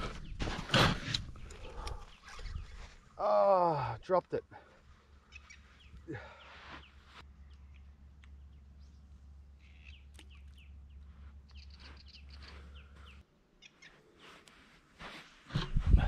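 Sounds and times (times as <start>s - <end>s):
small birds chirping: 0.0s - 15.4s
low steady hum: 7.0s - 13.2s.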